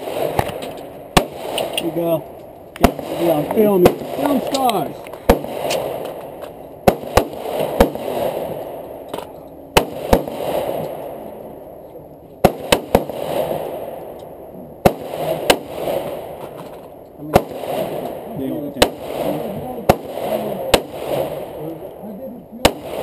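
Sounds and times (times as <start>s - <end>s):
handgun shots echoing: 0.0s - 2.0s, 2.8s - 6.3s.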